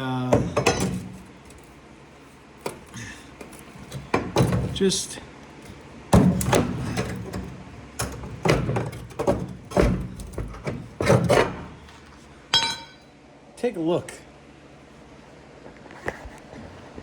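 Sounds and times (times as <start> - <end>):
knocks and scraping on metal floor: 5.7 - 11.9.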